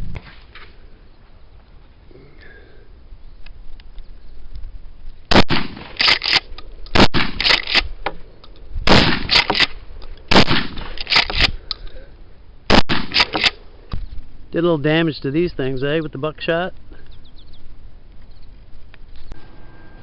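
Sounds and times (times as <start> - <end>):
shotgun shots: 5.3 - 7.9, 8.9 - 11.5, 12.7 - 13.6
shotgun pump racking clacks: 5.9 - 6.5, 7.3 - 7.9, 9.2 - 9.7, 10.9 - 11.6, 13.0 - 13.6.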